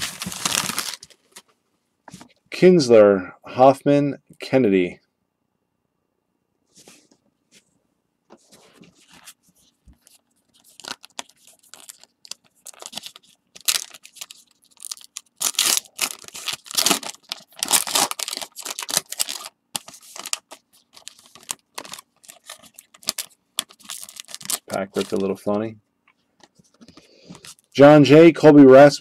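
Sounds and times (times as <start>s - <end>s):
wrapper tearing and crinkling: 0.0s - 1.4s, 10.1s - 25.4s.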